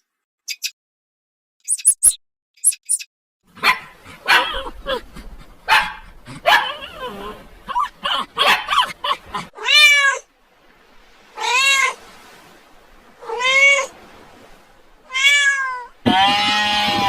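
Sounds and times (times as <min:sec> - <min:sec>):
cat meowing: 0:09.5 - 0:10.3, 0:11.4 - 0:12.0, 0:13.2 - 0:13.9, 0:15.0 - 0:17.0.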